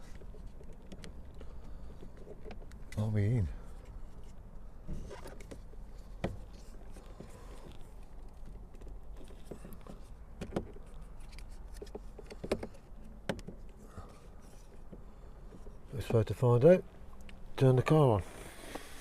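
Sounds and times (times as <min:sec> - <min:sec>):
plastic parts clicking and tapping: 0:08.4 - 0:13.8.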